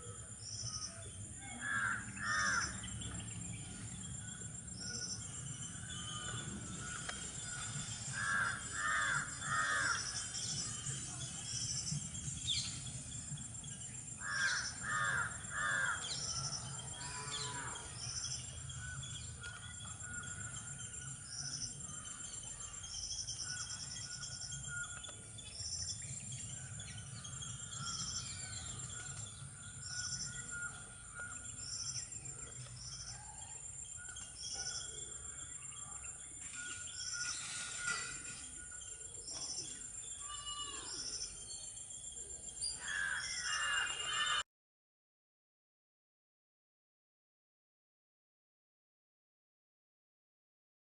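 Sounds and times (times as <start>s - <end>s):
steady high insect hum: 0.0s - 44.4s
crow cawing: 1.6s - 2.8s, 8.2s - 10.2s, 14.2s - 16.2s, 42.8s - 44.4s.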